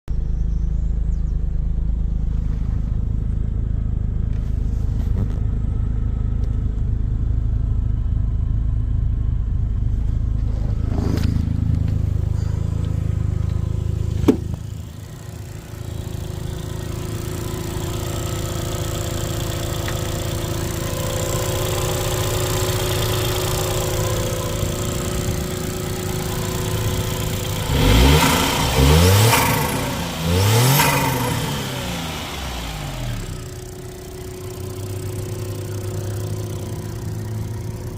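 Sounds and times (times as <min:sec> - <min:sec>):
car engine idling: 0:00.1 - 0:37.9
engine revving: 0:10.5 - 0:37.9.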